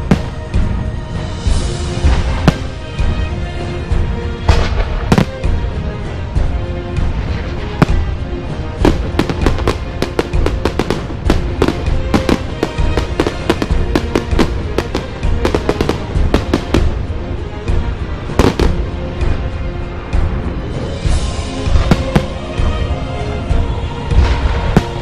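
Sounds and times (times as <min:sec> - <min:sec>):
music playing: 0:00.0 - 0:25.0
fireworks bangs and cracks: 0:02.0 - 0:03.1, 0:04.4 - 0:05.6, 0:07.2 - 0:08.2, 0:08.8 - 0:17.0, 0:18.3 - 0:18.9, 0:21.6 - 0:22.6.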